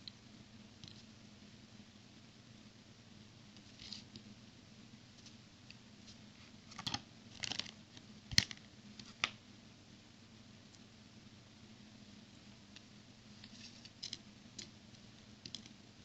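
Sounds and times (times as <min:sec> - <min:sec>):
low steady hum: 0:00.0 - 0:16.0.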